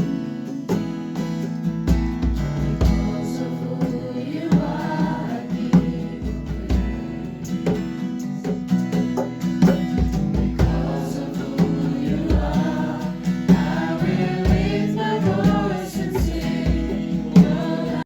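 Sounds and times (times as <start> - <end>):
bass drum beat: 2.0 - 18.0
choir singing: 2.8 - 8.0, 10.3 - 18.0.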